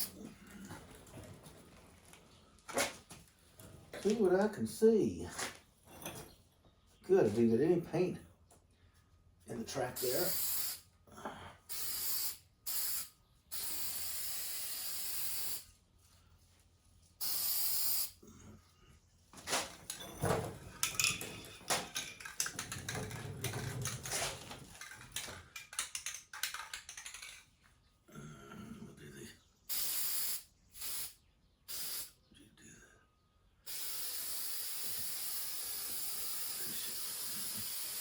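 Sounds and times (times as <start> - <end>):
spray paint can hissing: 10.0 - 10.9, 11.7 - 15.7, 17.2 - 18.2, 29.7 - 32.2, 33.7 - 38.0
clicking and clattering: 19.4 - 27.5.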